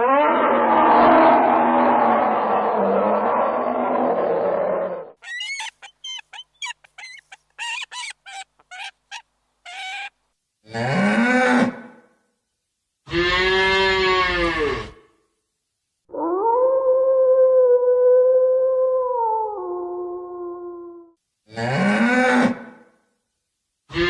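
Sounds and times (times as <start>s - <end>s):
short high squeaks: 5.2s - 10.2s.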